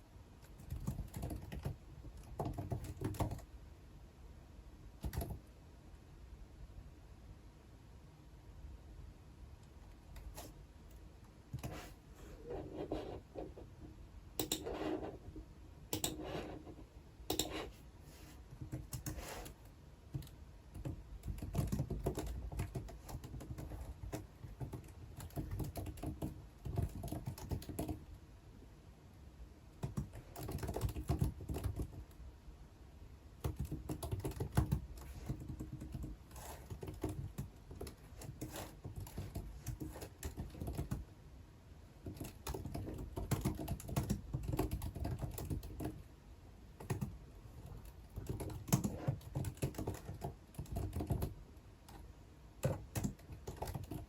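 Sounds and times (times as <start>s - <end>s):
computer keyboard typing: 0.4s - 3.5s, 5.0s - 5.5s, 14.4s - 15.1s, 15.9s - 16.6s, 17.3s - 17.7s, 18.5s - 28.0s, 29.8s - 32.1s, 33.4s - 41.0s, 42.0s - 46.0s, 46.8s - 52.0s, 52.6s - 54.0s.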